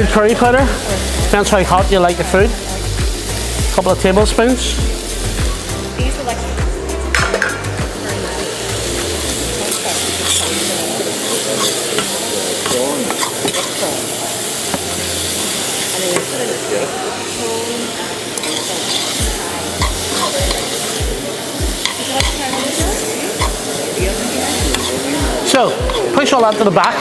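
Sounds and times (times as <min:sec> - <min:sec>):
vegetables sizzling in oil: 0:00.0 - 0:27.0
utensil scraping a pan: 0:08.2 - 0:14.0, 0:18.4 - 0:20.9, 0:21.8 - 0:27.0.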